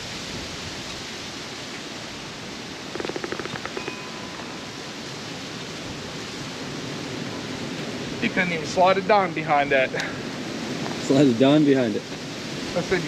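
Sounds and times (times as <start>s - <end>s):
rapid rattle of clicks: 2.9s - 3.9s.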